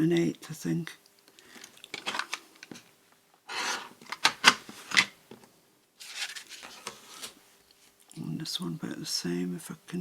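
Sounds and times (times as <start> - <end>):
paper rustling: 6.0 - 7.4.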